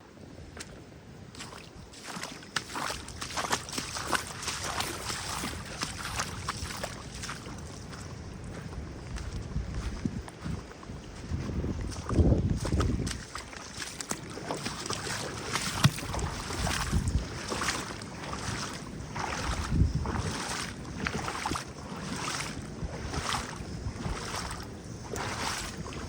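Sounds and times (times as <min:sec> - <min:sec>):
wind on microphone: 0:00.1 - 0:26.0
sea water splashing on rocks: 0:15.4 - 0:17.1.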